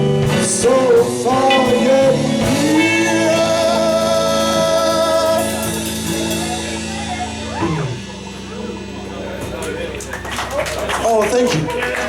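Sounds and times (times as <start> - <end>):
person singing: 0.0 - 8.0
electric guitar: 0.0 - 12.0
live rock band playing: 0.0 - 12.0.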